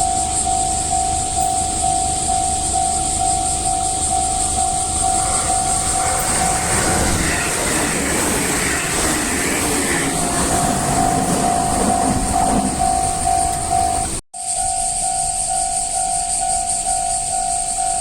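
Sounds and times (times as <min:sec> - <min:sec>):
train rumble and wheel noise: 0:00.0 - 0:14.2
level crossing warning bell: 0:00.0 - 0:18.0.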